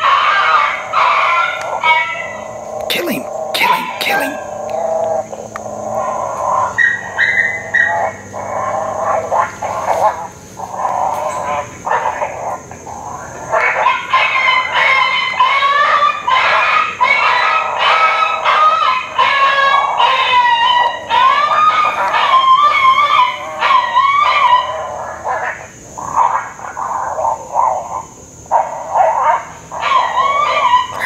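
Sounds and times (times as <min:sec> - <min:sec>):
coyote yips and whines: 0:29.8 - 0:31.0.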